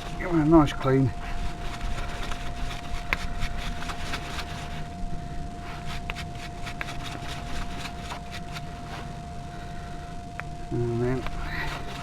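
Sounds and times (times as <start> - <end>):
wire brush scrubbing metal: 0.0 - 4.9, 5.6 - 9.2.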